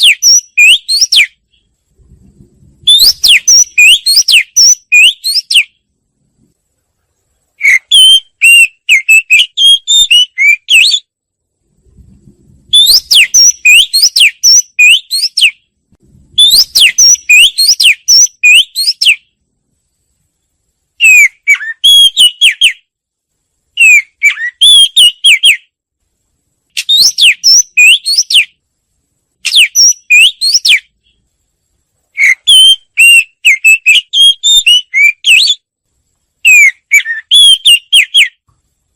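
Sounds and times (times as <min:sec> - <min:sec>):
wagtail singing: 0:00.0 - 0:01.7, 0:02.8 - 0:05.8, 0:12.7 - 0:15.6, 0:16.4 - 0:19.2, 0:26.8 - 0:28.5, 0:29.4 - 0:30.9, 0:32.2 - 0:35.6, 0:36.4 - 0:38.4.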